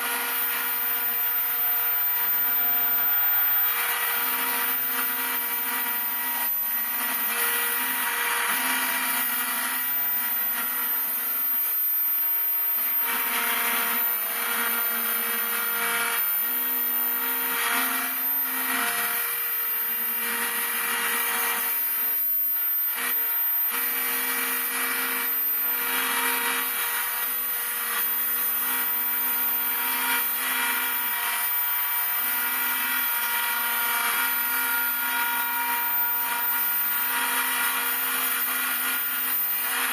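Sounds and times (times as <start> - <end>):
axis motors whirring: 0.0 - 16.5
router cutting noise: 0.0 - 39.9.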